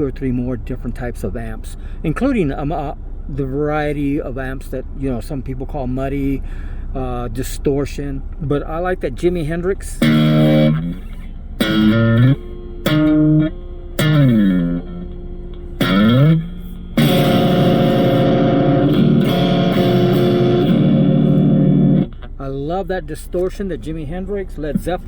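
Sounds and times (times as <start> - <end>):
distorted electric guitar: 10.0 - 22.3.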